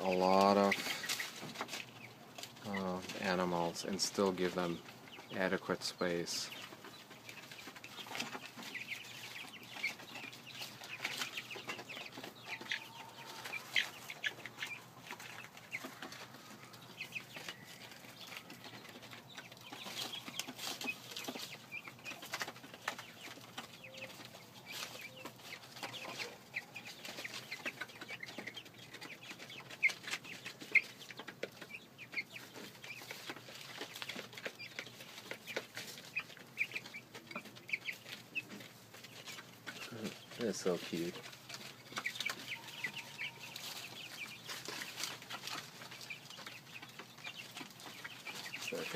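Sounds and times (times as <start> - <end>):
chickens clucking: 0.0 - 48.9
short high chick calls: 42.4 - 43.9.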